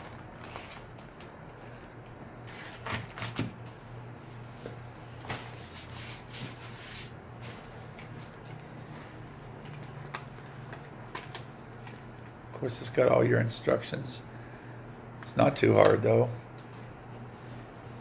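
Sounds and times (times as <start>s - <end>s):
plastic wrap and paper rustling: 0.0s - 3.4s.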